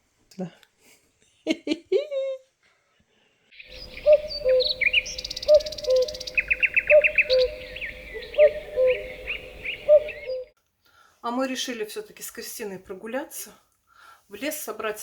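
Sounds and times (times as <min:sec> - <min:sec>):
birds chirping and trilling: 0:03.5 - 0:10.5
low two-note hooting call: 0:03.9 - 0:10.5.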